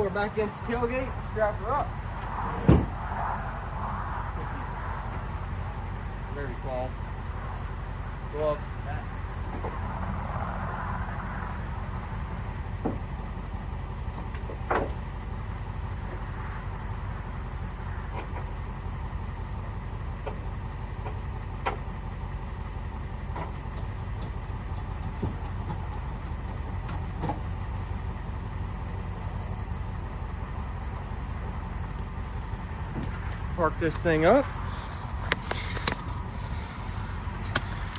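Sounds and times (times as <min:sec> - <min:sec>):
truck engine idling: 0:00.0 - 0:37.9
sharp clicks and knocks: 0:35.2 - 0:36.2.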